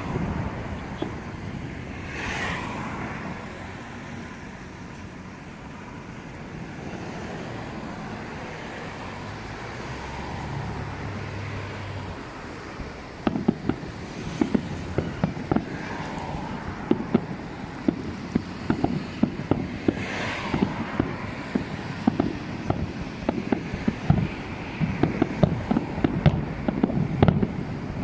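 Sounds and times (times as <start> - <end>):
wind on microphone: 0.0 - 5.2, 5.8 - 28.0
firework pops and bangs: 13.1 - 28.0.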